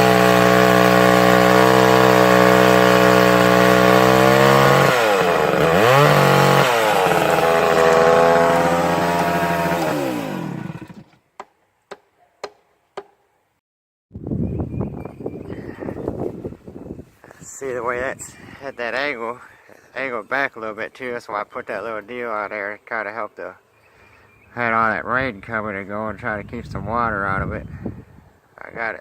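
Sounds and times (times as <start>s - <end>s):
chainsaw running: 0.0s - 11.2s.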